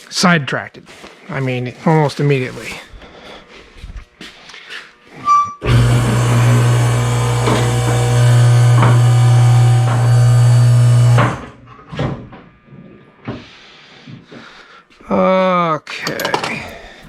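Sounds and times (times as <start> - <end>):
impact wrench running: 5.6 - 11.7.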